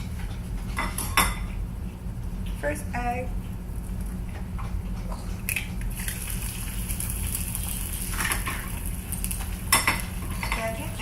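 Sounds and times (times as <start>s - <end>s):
steady low hum: 0.0s - 11.0s
egg sizzling in a pan: 5.9s - 10.4s.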